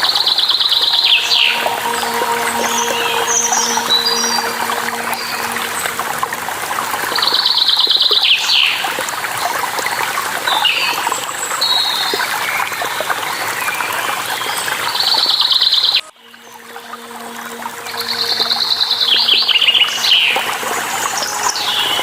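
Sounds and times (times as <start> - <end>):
waterfall rushing: 0.8 - 9.3.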